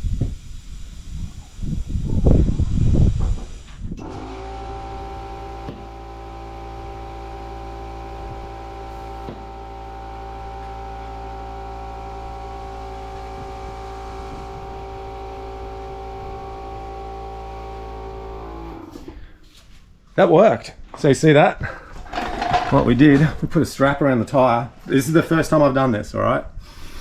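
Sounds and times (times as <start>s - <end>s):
air compressor running: 0.0s - 19.6s.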